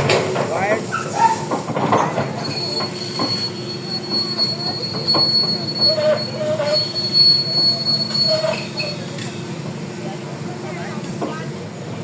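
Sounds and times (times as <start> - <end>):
excavator engine running: 0.0 - 12.0
high-pitched undercarriage squeal: 0.9 - 9.1
wavering squeak: 2.4 - 9.1.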